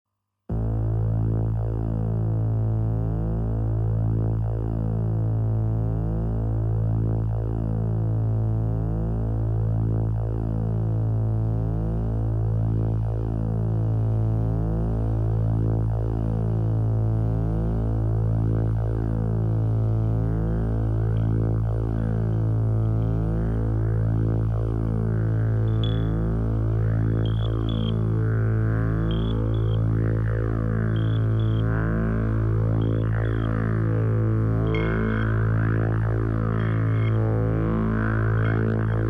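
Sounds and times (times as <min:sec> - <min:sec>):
deep synthesizer drone: 0:00.5 - 0:39.0
pulsing high synth tones: 0:21.4 - 0:39.0.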